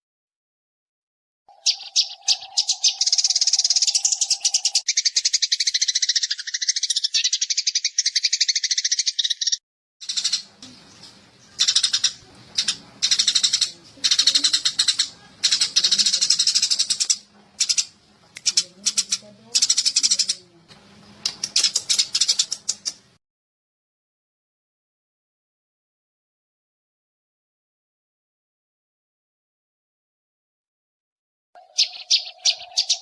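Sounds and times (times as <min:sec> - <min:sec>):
sparrows chattering: 0:01.5 - 0:23.2, 0:31.6 - 0:33.0.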